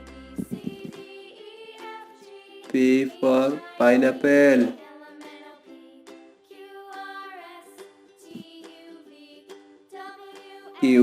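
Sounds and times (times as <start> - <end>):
quiet children's background music: 0.0 - 11.0.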